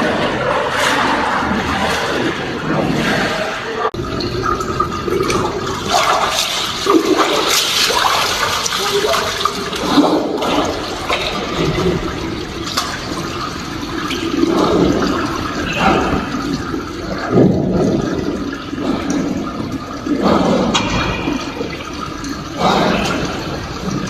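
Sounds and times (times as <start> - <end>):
water rushing and splashing: 0.0 - 24.0.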